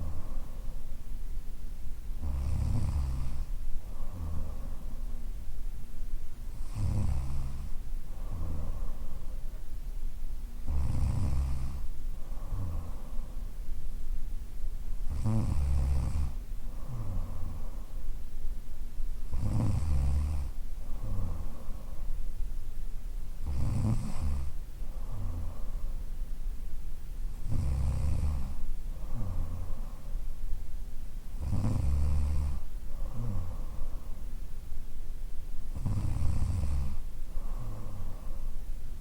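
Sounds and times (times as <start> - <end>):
woman snoring: 2.2 - 4.8, 6.5 - 8.9, 10.6 - 13.1, 15.1 - 17.7, 19.3 - 21.6, 23.4 - 25.6, 27.4 - 29.8, 31.4 - 33.8, 35.7 - 38.2.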